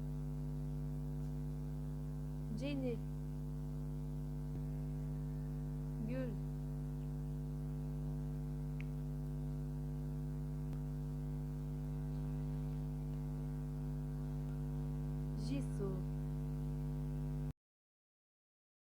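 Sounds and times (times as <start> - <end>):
electrical mains hum: 0.0 - 17.5.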